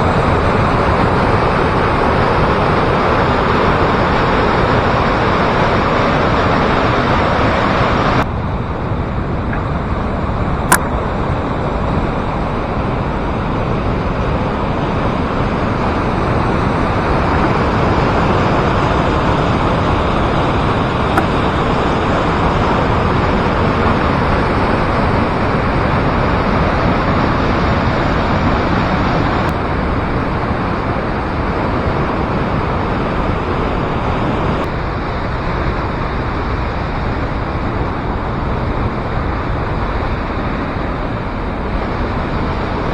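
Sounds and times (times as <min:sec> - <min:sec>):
sharp click: 0:10.7 - 0:11.0.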